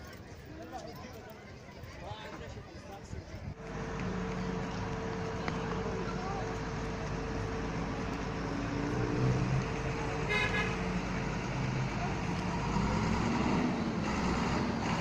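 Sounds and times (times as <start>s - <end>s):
road traffic engines: 0.0s - 15.0s
short horn toot: 10.2s - 10.8s.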